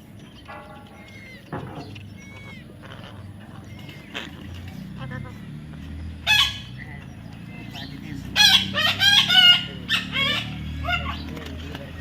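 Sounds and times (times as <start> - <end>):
parrot calling loudly: 6.2 - 6.8, 8.4 - 11.3.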